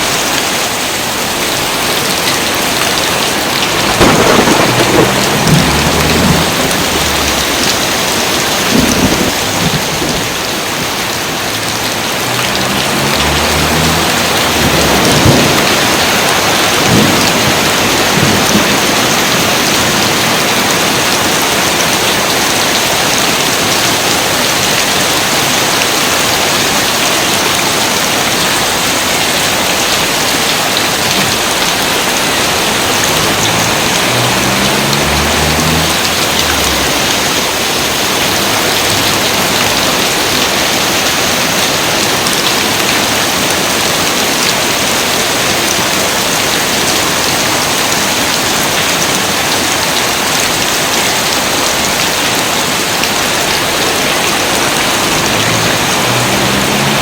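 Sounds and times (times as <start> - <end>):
heavy rain falling: 0.0 - 57.0
thunder rolling: 2.8 - 19.9, 32.1 - 40.8.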